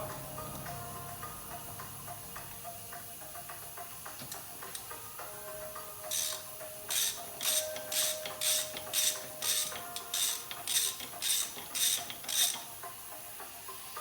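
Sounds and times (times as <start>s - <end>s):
ratchet wrench clicking: 6.0s - 12.8s.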